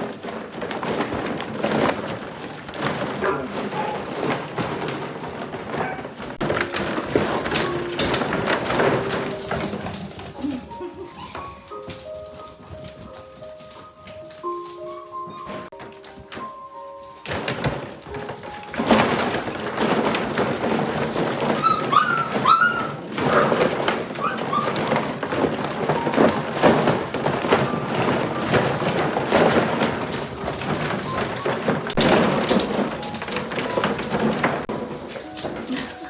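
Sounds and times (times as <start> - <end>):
puppies scrambling and playing: 0.0 - 36.0
puppies yipping: 6.8 - 16.3, 21.2 - 29.8.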